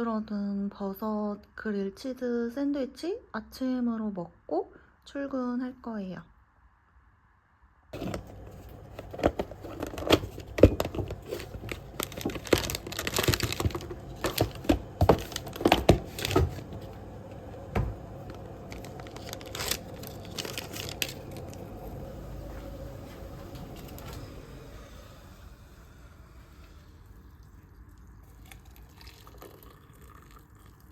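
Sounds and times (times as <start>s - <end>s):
faint room hum: 0.0s - 30.9s
food wrapping crinkling and tearing: 8.0s - 21.8s.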